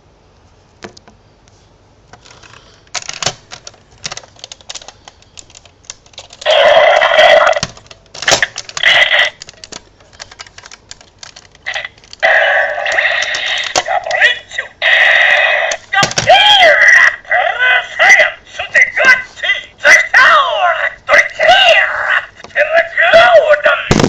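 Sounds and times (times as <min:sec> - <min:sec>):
electronic toy sound bursts: 0:08.8 - 0:09.4.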